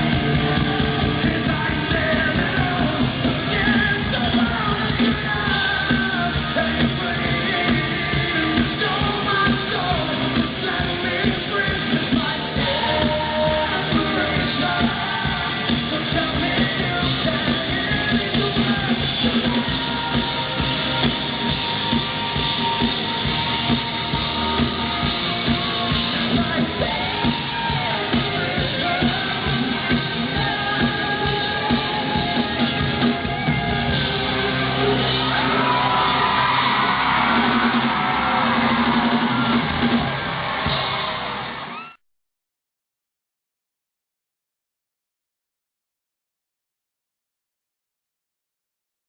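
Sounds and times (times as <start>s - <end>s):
man singing: 0.0s - 36.4s
drum beat: 0.0s - 41.0s
live rock band playing: 0.0s - 41.7s.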